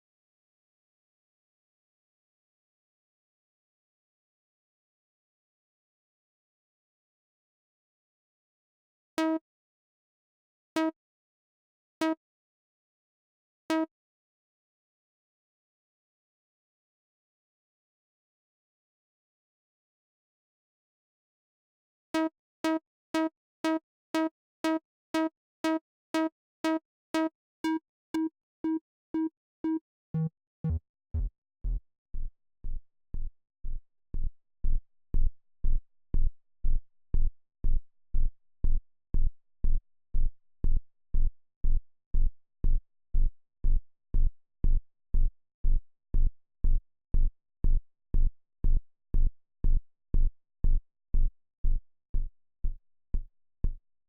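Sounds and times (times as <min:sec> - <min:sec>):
synthesizer kick drum hits: 0:30.2 - 0:31.8.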